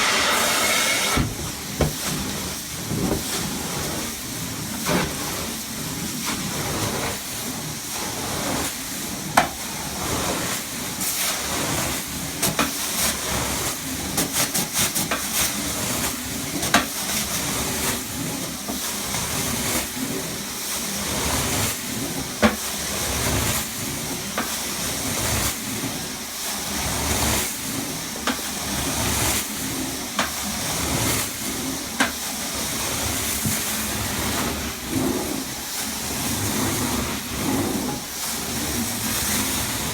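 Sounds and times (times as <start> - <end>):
steam cleaning machine hissing: 0.0 - 24.3.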